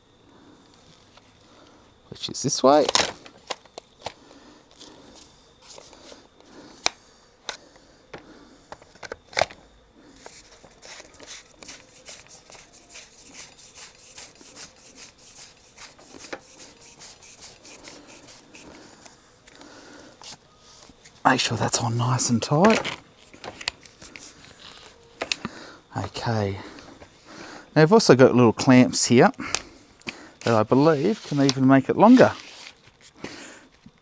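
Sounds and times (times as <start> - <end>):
collar screwing ticks and rubbing: 10.2 - 19.6.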